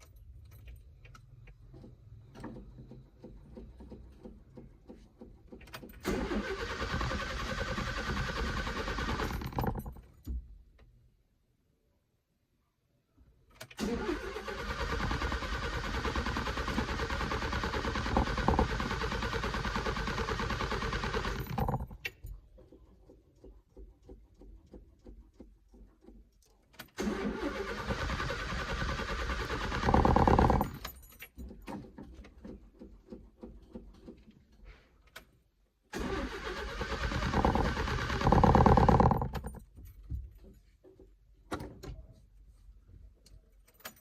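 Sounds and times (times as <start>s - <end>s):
starter cranking engine: 2.5s - 10.0s, 13.8s - 22.1s, 27.0s - 30.9s, 35.9s - 39.6s.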